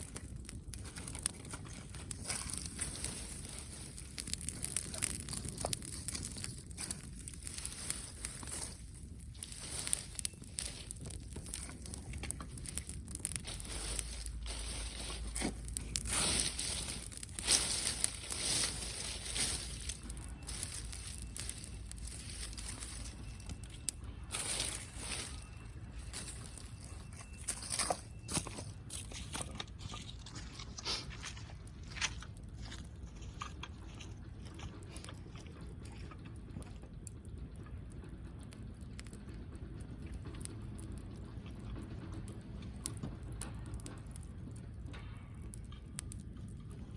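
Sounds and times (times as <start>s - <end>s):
branches and twigs rustling: 0.0s - 35.4s
campfire crackling and popping: 0.0s - 46.9s.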